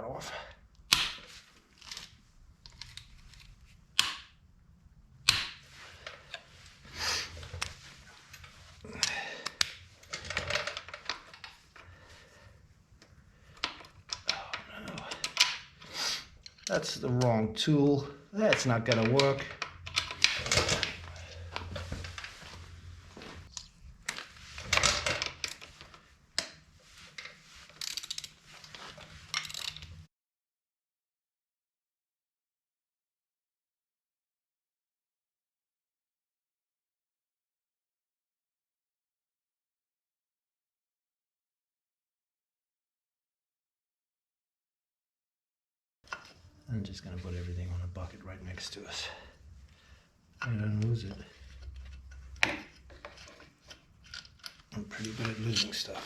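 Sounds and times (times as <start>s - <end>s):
tools and metal parts clicking: 13.6s - 16.8s, 18.5s - 21.5s, 27.2s - 30.0s, 51.4s - 56.0s.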